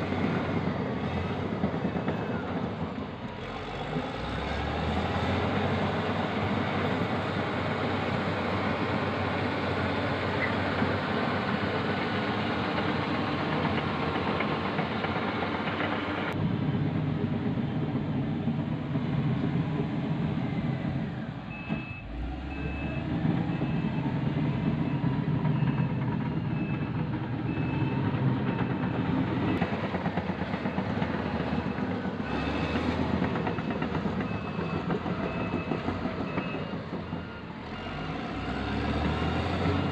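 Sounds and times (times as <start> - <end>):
heavy machine diesel engines: 0.0 - 39.9
reversing alarm beeping: 21.5 - 29.6, 31.5 - 39.9.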